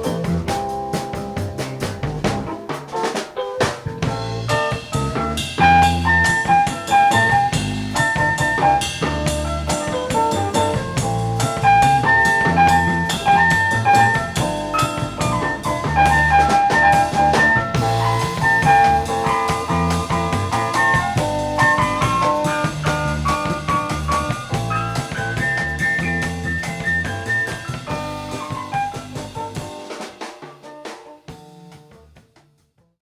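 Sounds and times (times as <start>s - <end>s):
drum kit: 0.0s - 32.7s
bass: 0.0s - 33.0s
melodic instruments: 4.1s - 29.4s.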